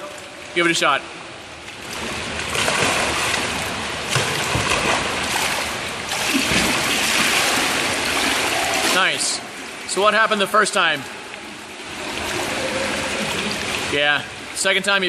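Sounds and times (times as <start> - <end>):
water splashing and churning: 0.0 - 15.0.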